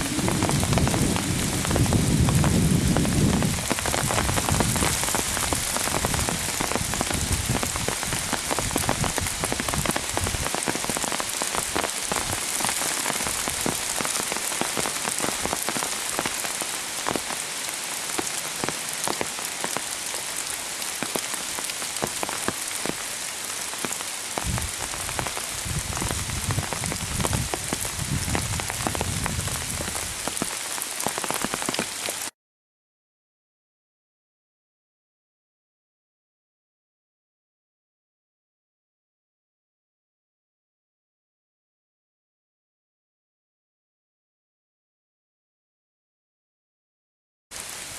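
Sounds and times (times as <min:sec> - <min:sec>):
dull low rumbles: 0:00.0 - 0:03.5
heavy rain pouring: 0:00.0 - 0:32.3, 0:47.5 - 0:47.9
sharp raindrop impacts: 0:00.0 - 0:32.3.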